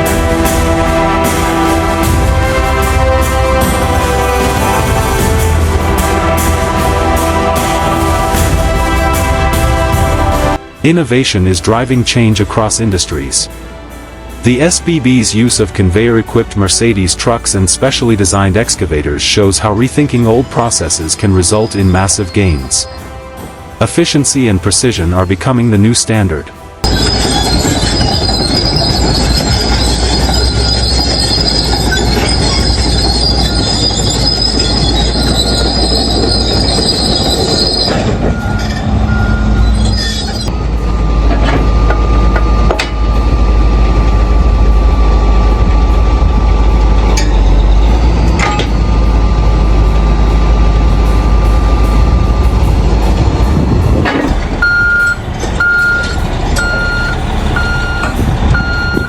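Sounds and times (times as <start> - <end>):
heavy machinery engines running: 0.0 - 10.8, 26.6 - 59.0
high-pitched metallic squeal: 17.5 - 23.5, 26.8 - 59.0
reversing beeps: 37.1 - 42.8, 54.6 - 59.0.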